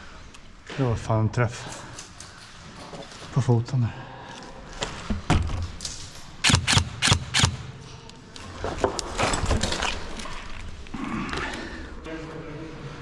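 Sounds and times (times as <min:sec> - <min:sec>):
airsoft guns firing: 0:06.4 - 0:07.9.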